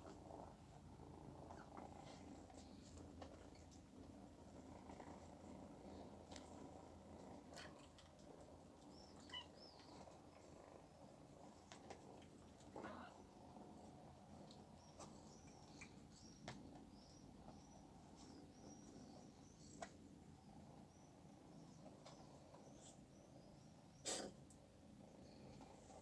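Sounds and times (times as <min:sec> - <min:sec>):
faint bird chirping: 0:01.1 - 0:11.6, 0:12.8 - 0:26.0
cat sneezing: 0:24.0 - 0:24.4.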